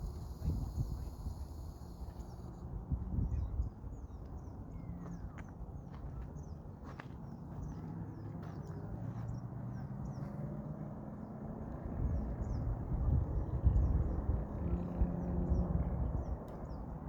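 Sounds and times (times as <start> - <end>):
low wind rumble: 0.0 - 5.0, 11.4 - 17.0.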